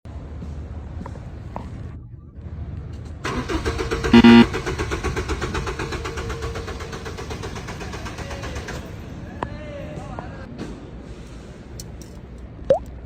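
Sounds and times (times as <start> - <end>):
car engine cranking and running: 3.2 - 9.1
short loud tone: 4.1 - 4.5.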